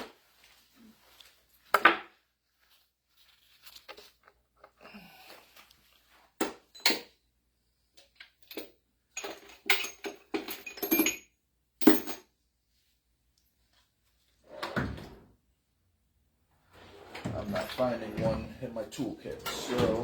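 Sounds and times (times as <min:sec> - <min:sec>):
soft rustle: 0:02.4 - 0:04.4
metal tools clinking: 0:08.4 - 0:11.2.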